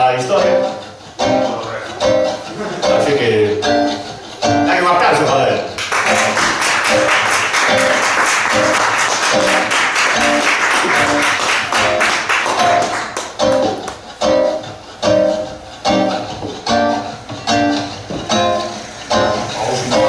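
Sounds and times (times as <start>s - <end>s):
guitar chords strummed: 0.0s - 20.0s
guitar notes picked: 0.0s - 20.0s
audience applause: 5.8s - 14.0s.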